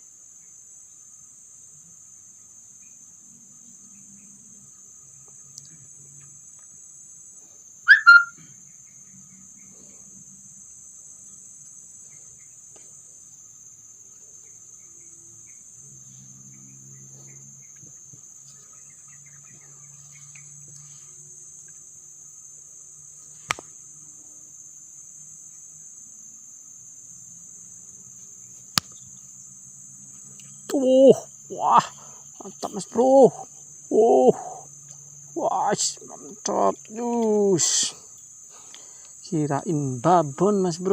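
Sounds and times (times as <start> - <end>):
crickets chirring: 0.0 - 40.9
loud short high call: 7.9 - 8.4.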